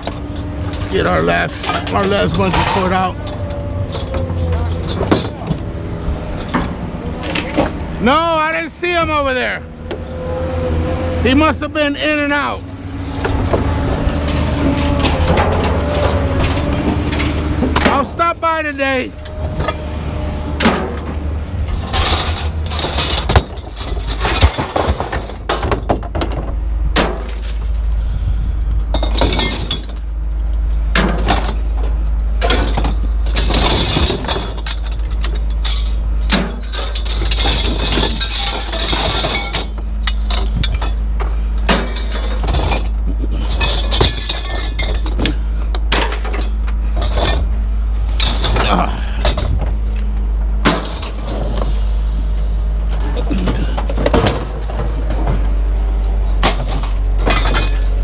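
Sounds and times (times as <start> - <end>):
scrap clattering and clinking: 0.0 - 10.1, 12.0 - 19.9, 20.6 - 28.0, 28.8 - 50.0, 50.6 - 51.8, 52.9 - 58.0
steady low rumble: 0.0 - 58.0
glass breaking: 32.4 - 41.0.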